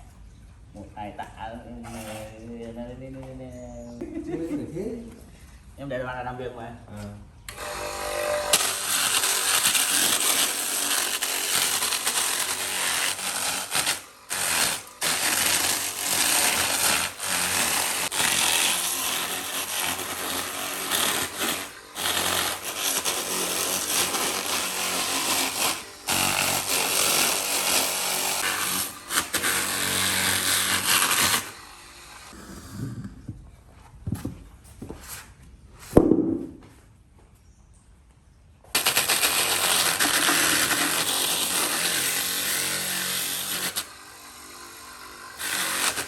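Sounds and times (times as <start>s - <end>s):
power tool working wood: 7.5s - 33.2s, 38.8s - 46.0s.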